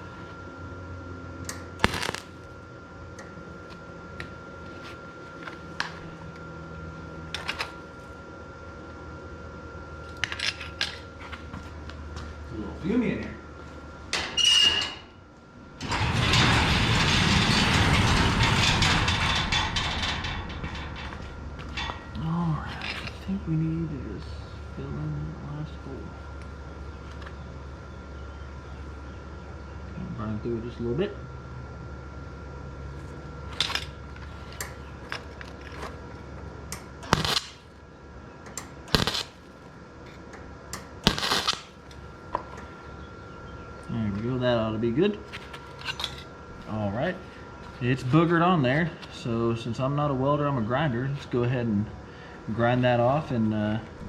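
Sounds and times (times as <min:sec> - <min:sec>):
welding arc crackling and sizzling: 0:01.5 - 0:02.6, 0:33.5 - 0:37.8, 0:38.5 - 0:42.1.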